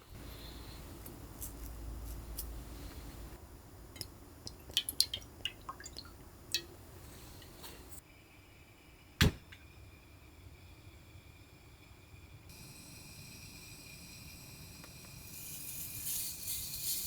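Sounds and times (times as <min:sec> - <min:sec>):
low steady rumble: 0:00.0 - 0:08.0.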